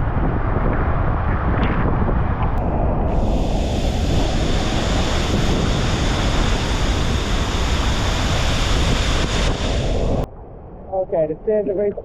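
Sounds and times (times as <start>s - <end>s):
waterfall rushing: 2.6s - 10.2s.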